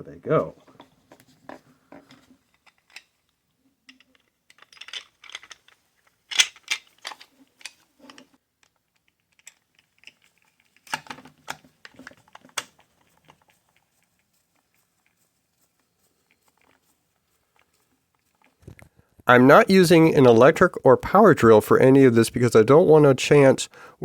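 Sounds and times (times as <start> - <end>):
small screws and plastic parts rattling: 0.7 - 19.1.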